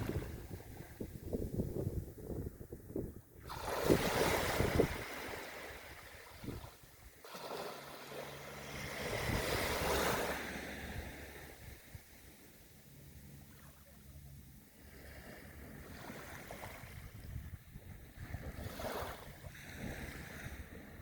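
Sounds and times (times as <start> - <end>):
wind buffeting microphone: 0.0 - 7.0, 8.9 - 12.2, 15.6 - 21.0.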